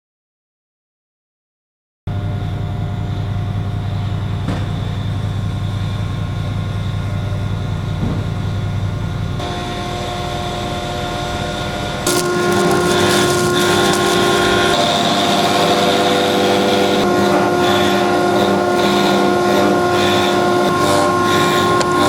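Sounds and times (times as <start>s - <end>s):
cnc router mechanical drone: 9.4s - 22.0s.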